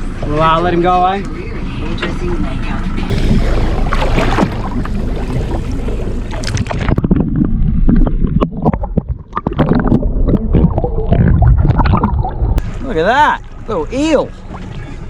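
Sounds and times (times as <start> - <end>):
wind buffeting microphone: 3.1 - 12.6.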